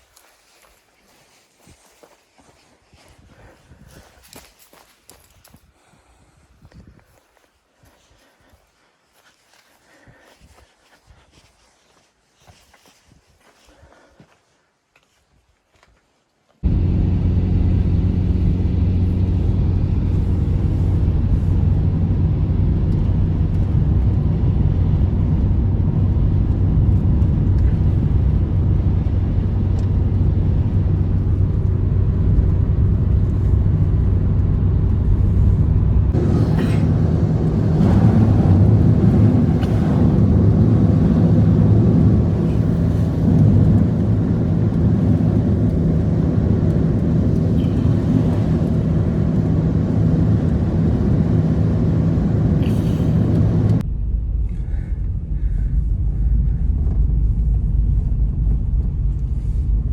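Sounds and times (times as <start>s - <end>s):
engine humming: 16.6s - 56.0s.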